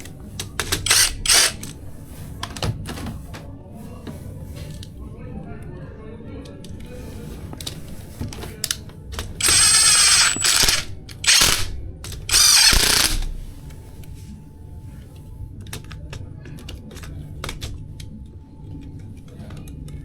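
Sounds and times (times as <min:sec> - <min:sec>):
power tool motor bursts: 0:00.8 - 0:01.6, 0:09.4 - 0:13.3.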